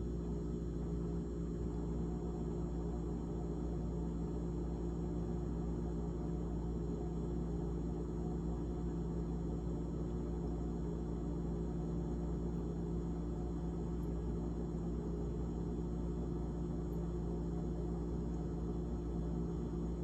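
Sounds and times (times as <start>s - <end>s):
refrigerator humming: 0.0s - 20.0s.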